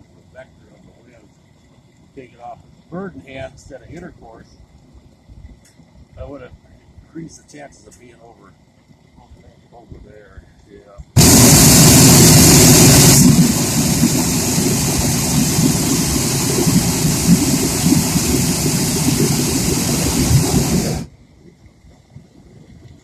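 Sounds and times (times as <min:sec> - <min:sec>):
propane burner roaring: 0:11.2 - 0:21.1.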